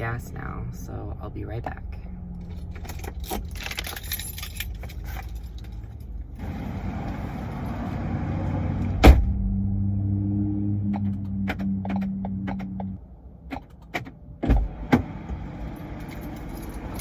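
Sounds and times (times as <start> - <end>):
keys jangling: 2.4 - 6.4, 15.6 - 17.0.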